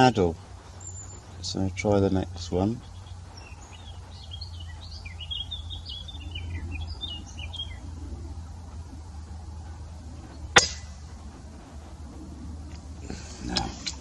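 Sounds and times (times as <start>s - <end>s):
small bird twittering song: 0.0s - 11.2s
steady low rumble: 0.0s - 14.0s.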